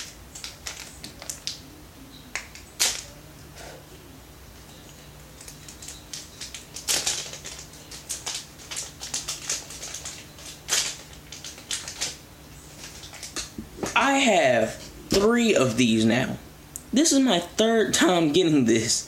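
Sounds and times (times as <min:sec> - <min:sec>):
packaging crinkling: 0:00.0 - 0:01.6, 0:05.4 - 0:13.5.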